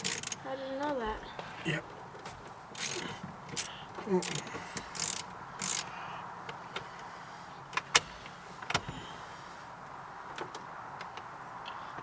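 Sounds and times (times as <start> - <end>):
clicks and knocks of hand tools: 0.0 - 0.4, 2.2 - 5.9.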